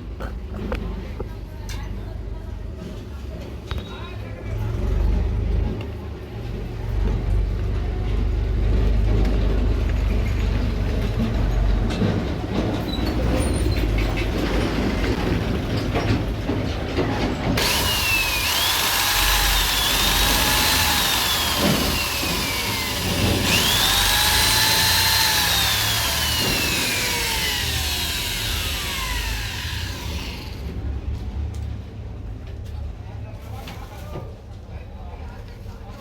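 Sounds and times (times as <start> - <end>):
electric drill motor whine: 17.6 - 30.6.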